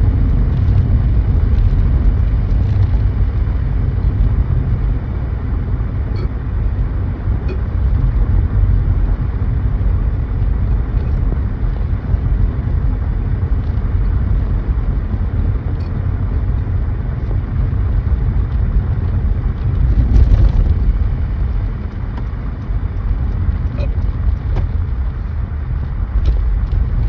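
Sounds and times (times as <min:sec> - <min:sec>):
car road and engine rumble: 0:00.0 - 0:27.0.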